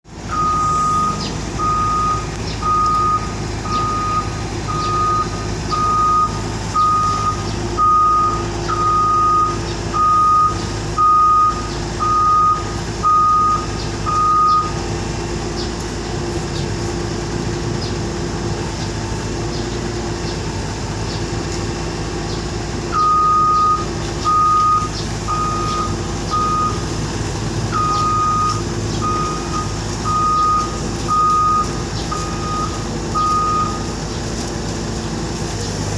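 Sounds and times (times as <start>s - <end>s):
diesel engine running: 0.0s - 35.9s
reverse alarm beeping: 0.2s - 14.8s, 22.9s - 27.0s, 27.7s - 34.0s.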